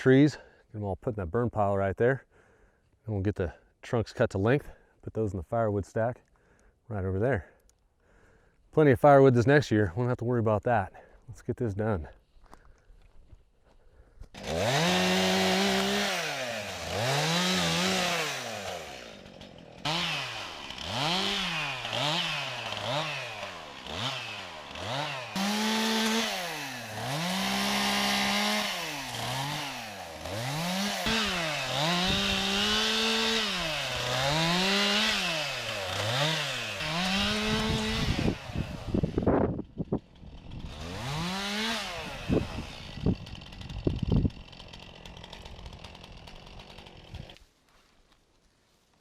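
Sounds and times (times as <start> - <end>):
chainsaw revving and idling: 14.3 - 47.4.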